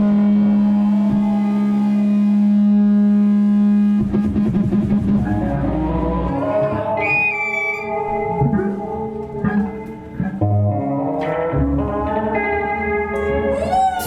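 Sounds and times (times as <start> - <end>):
loud held droning note: 0.0 - 9.2.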